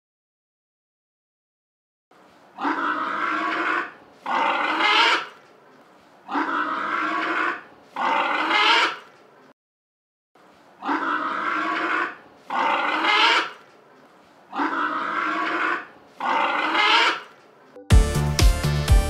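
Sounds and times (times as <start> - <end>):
pigs squealing: 2.6 - 5.4, 6.3 - 9.1, 10.8 - 13.6, 14.5 - 17.4.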